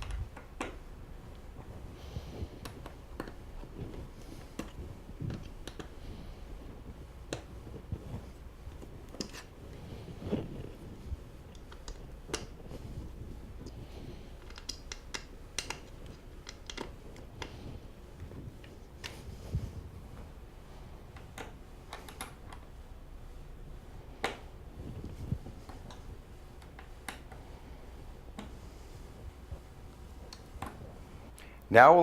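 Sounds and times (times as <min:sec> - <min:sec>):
light scraping and handling: 0:01.3 - 0:23.5, 0:24.2 - 0:31.4.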